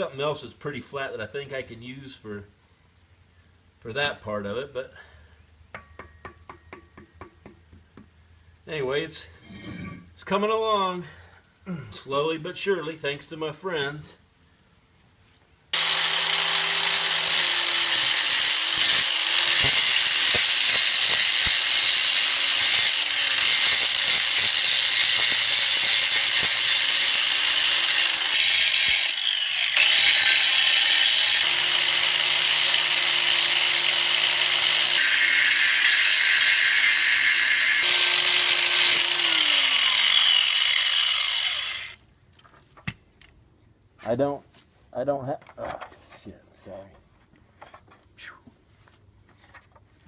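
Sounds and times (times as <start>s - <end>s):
angle grinder grinding steel: 15.8s - 42.0s.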